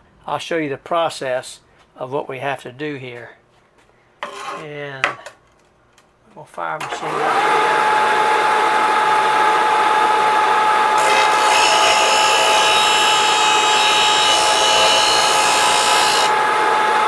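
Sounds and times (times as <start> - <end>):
electric sander whine: 7.1 - 17.0.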